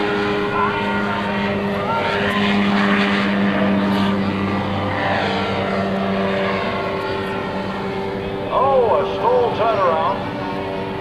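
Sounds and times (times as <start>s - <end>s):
aircraft engine droning: 0.0s - 11.0s.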